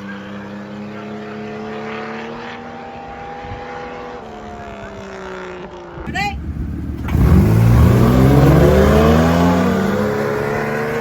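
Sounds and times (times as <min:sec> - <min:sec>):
engine idling: 0:06.1 - 0:09.0.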